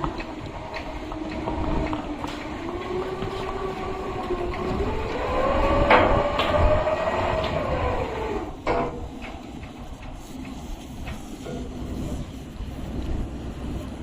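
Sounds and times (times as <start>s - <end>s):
mechanical whine of winch gear: 0.0s - 9.2s.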